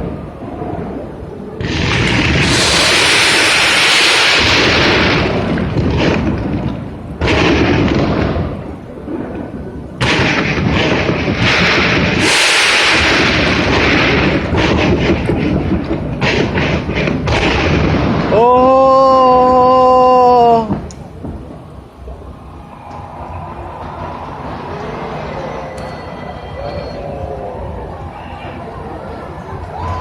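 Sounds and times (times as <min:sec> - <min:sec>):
fireworks crackling: 0:00.0 - 0:18.7
fireworks booming: 0:00.0 - 0:22.3.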